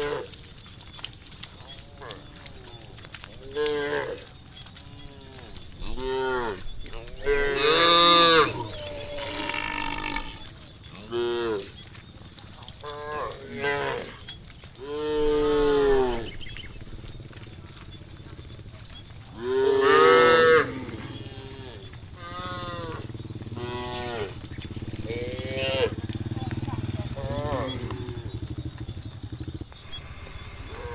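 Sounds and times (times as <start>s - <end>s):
cattle mooing: 14.8s - 29.6s.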